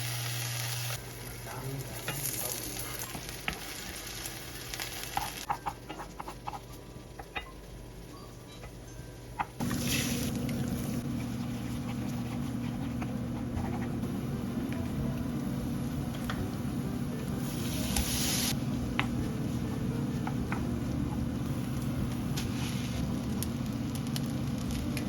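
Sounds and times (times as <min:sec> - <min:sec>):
pan sizzling: 0:00.0 - 0:05.6, 0:09.6 - 0:11.8, 0:14.1 - 0:19.0
steady low hum: 0:01.0 - 0:25.0.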